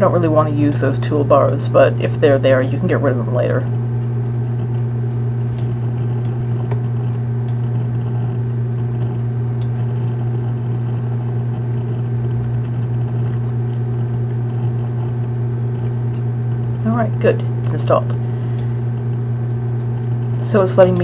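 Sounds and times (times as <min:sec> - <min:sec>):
low electrical hum: 0:00.0 - 0:21.0
faint clicks: 0:18.5 - 0:18.8.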